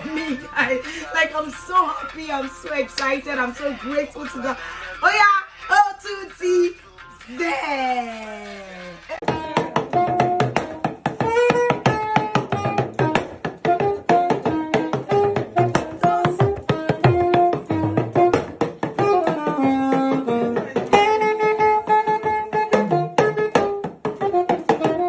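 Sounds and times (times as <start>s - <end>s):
hand drum beat: 9.1s - 25.0s.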